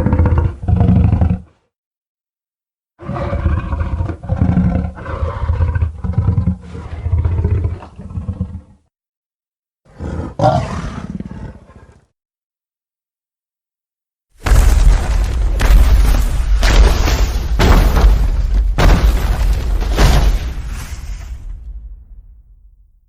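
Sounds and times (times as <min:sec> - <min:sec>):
monster growling roars: 0:00.0 - 0:01.5, 0:03.0 - 0:08.7, 0:09.9 - 0:12.1.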